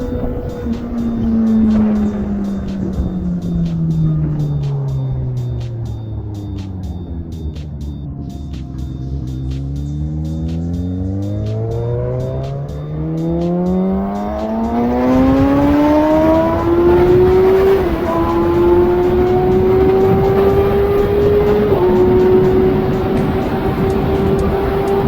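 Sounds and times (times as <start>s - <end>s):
rushing wind noise: 0.0s - 6.5s, 11.8s - 25.0s
motorcycle engine accelerating: 0.0s - 25.0s.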